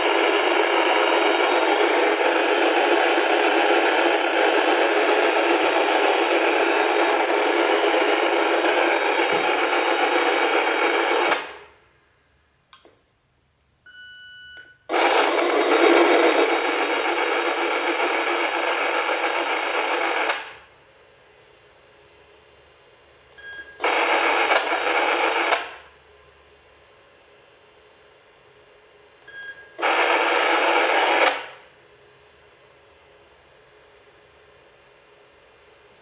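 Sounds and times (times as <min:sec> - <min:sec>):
radio static hiss: 0:00.0 - 0:11.7, 0:14.9 - 0:20.6, 0:23.8 - 0:25.8, 0:29.8 - 0:31.6.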